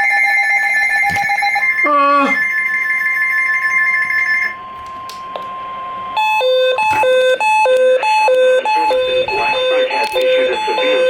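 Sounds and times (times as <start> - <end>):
alternating high-low alarm: 0.0 - 11.0
steady warning tone: 0.0 - 11.0
screeching digital data: 8.6 - 11.0.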